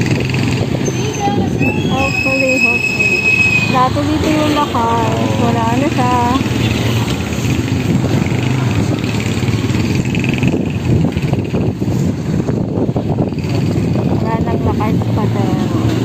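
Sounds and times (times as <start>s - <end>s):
traffic rumble: 0.0s - 16.0s
motorcycle engine running: 3.8s - 16.0s.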